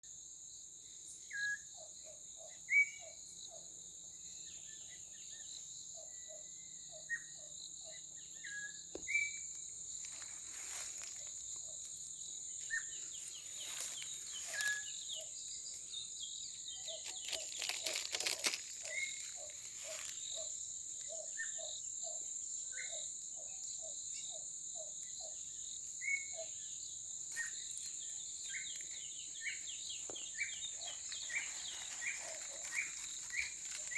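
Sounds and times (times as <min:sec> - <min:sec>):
insects droning: 0:00.0 - 0:33.9
birds calling: 0:12.6 - 0:21.8, 0:27.3 - 0:33.9.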